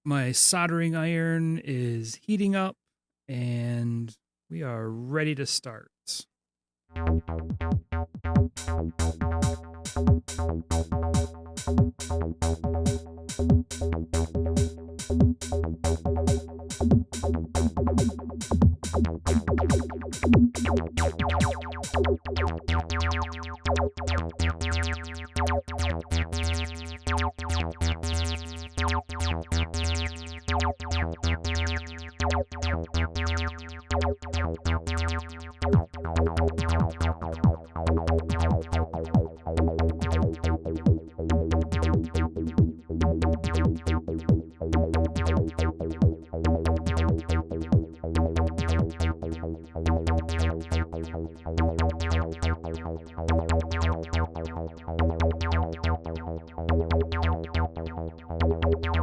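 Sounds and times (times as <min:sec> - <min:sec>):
electronic music with drum beat: 0:07.5 - 0:22.3, 0:35.6 - 0:36.0, 0:38.3 - 0:39.4, 0:40.0 - 0:41.1, 0:41.7 - 0:42.8, 0:43.4 - 0:46.3.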